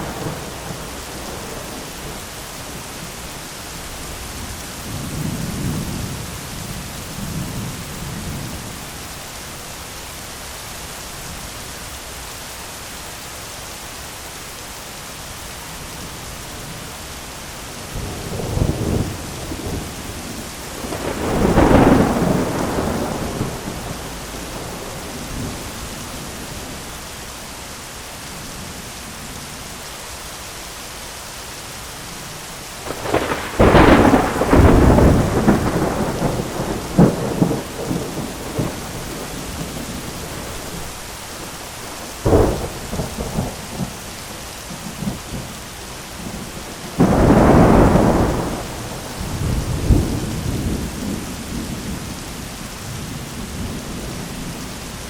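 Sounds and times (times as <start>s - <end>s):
heavy rain on an umbrella: 0.0s - 55.0s
thunder rolling: 18.0s - 26.8s, 32.8s - 41.0s, 41.9s - 44.0s, 46.2s - 52.2s.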